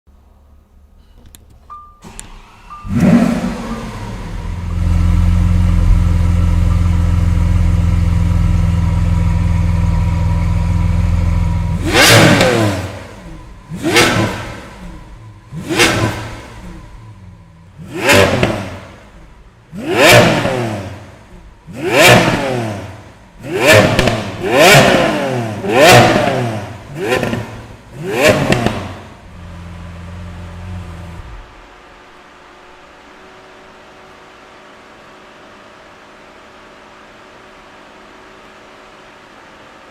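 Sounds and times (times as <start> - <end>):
car engine idling: 2.3 - 32.8
car engine revving: 2.4 - 31.7.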